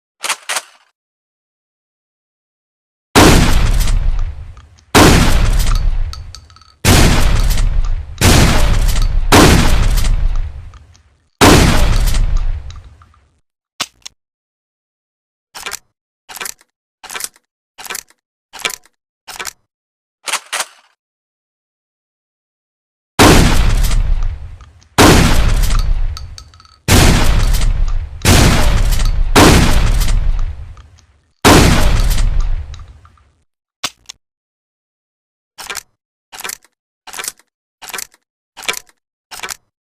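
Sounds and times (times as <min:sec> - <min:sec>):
shotgun blasts with echo: 0:03.2 - 0:10.7, 0:11.4 - 0:12.8, 0:23.2 - 0:30.8, 0:31.4 - 0:32.9
short clicks: 0:11.9 - 0:14.2, 0:15.6 - 0:21.0, 0:32.0 - 0:34.2, 0:35.6 - 0:39.7.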